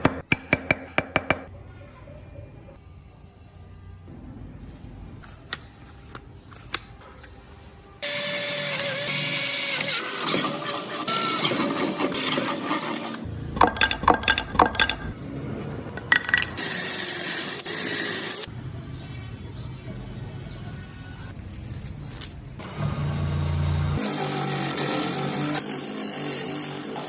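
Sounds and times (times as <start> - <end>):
power tool running: 8.0 - 13.2, 22.6 - 27.0.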